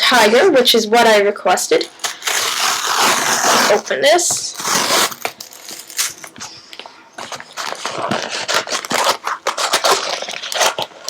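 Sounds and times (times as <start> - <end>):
packaging being opened: 1.8 - 3.9, 4.5 - 6.4, 7.2 - 11.0.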